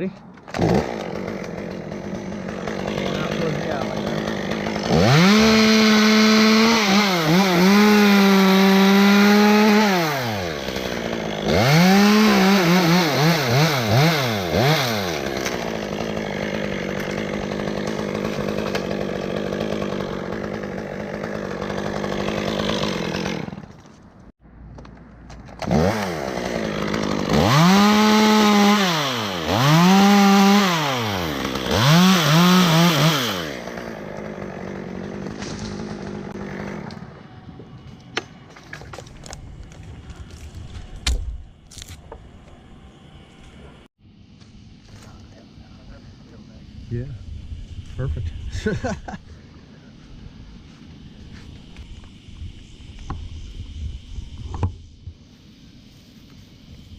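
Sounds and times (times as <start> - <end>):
chainsaw idling: 0.2 - 23.9, 25.6 - 39.4
chainsaw cutting wood: 0.2 - 24.3, 25.4 - 43.8.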